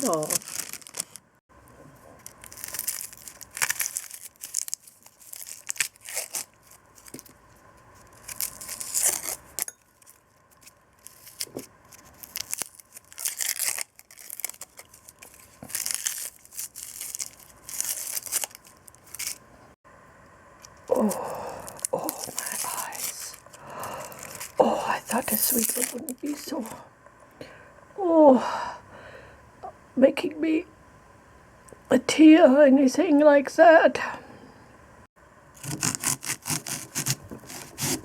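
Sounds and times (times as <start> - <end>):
crinkling and tearing by hand: 0.0 - 1.3, 2.0 - 19.4, 20.6 - 26.8, 35.6 - 38.0.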